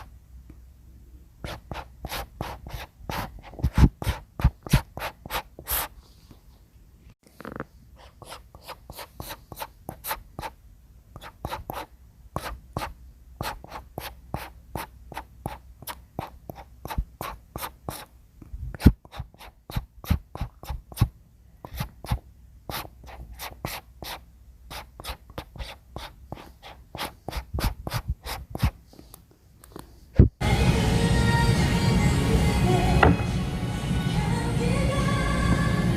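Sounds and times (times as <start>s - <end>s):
brush scratching on wood: 21.8s - 28.8s
music: 30.4s - 35.9s.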